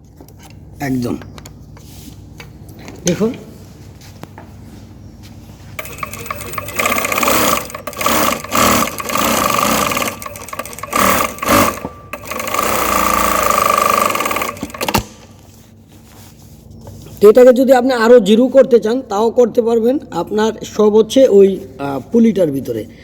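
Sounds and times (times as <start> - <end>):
sewing machine running: 5.8 - 15.2.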